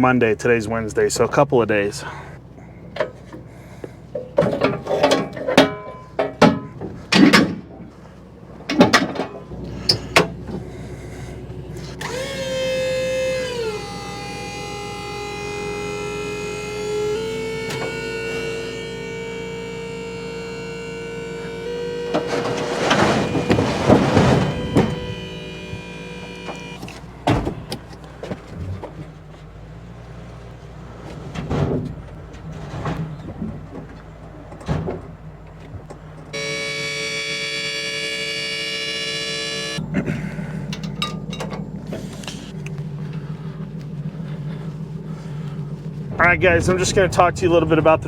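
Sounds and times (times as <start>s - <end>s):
truck engine running: 0.0s - 48.0s
sharp knocks and clunks: 4.2s - 7.9s
held multi-pitched tone: 13.3s - 26.9s, 36.4s - 40.0s.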